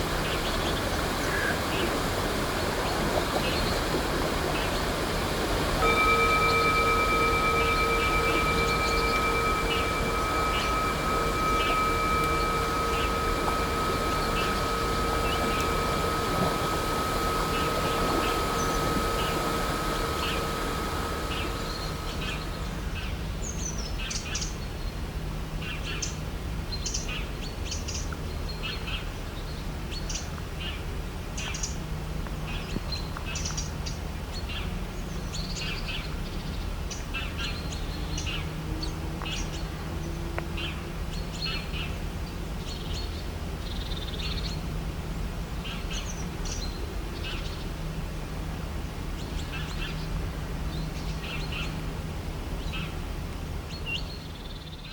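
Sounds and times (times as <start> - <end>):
low background rumble: 0.0 - 23.5
birds chirping: 0.1 - 22.8.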